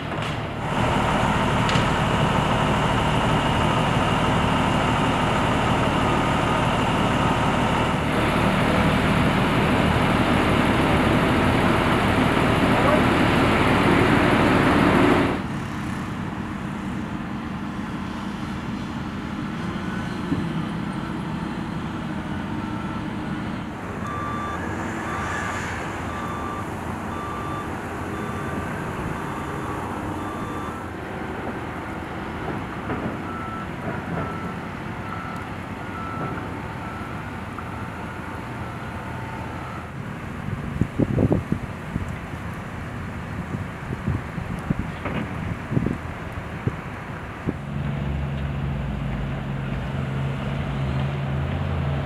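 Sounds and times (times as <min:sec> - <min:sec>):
heavy equipment running: 0:00.0 - 0:52.0
reversing alarm beeping: 0:22.4 - 0:30.9, 0:33.2 - 0:40.0.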